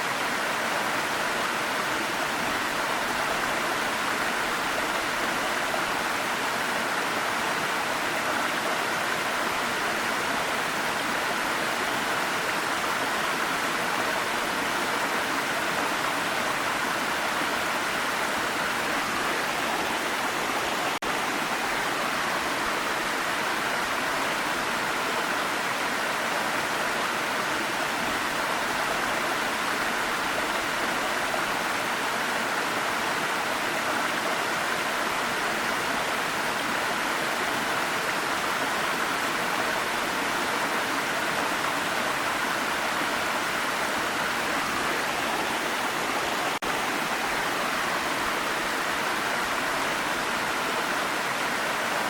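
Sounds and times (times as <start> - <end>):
waterfall rushing: 0.0 - 52.0.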